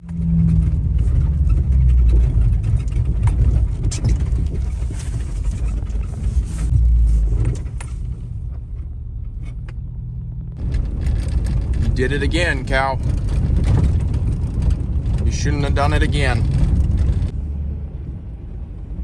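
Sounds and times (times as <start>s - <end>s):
rattles and knocks: 0.0s - 17.4s
vehicle engine rumbling: 0.0s - 19.0s.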